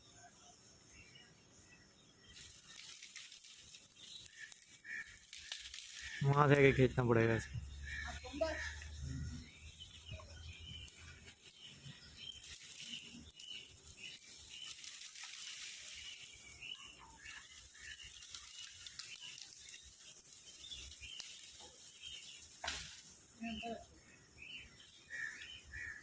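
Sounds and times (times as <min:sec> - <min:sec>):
birds chirping faintly: 0:00.0 - 0:26.0
steady outdoor hiss: 0:00.0 - 0:26.0.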